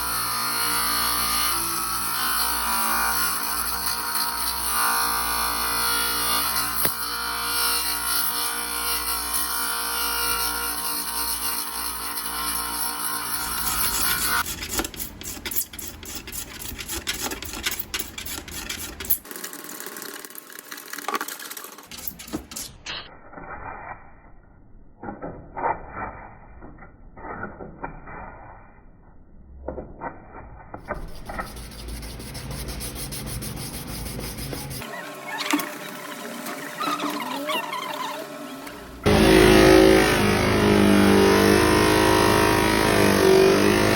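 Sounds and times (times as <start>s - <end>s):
small power tool running: 0.0s - 14.5s, 37.9s - 43.9s
scraping and rubbing on plastic: 14.4s - 22.6s, 30.7s - 34.9s.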